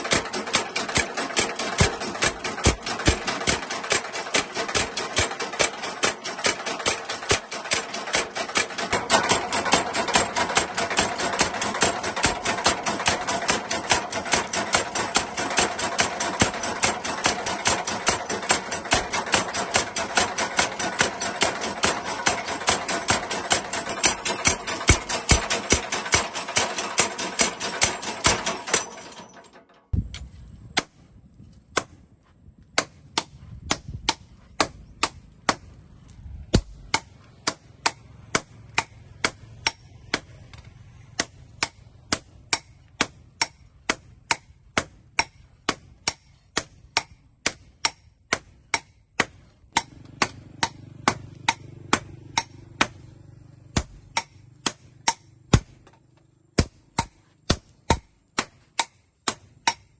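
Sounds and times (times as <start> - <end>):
hammer striking steel on anvil: 0.0 - 29.6, 36.5 - 53.1, 53.7 - 56.0, 56.6 - 59.9
dense mechanical noise: 0.0 - 31.8.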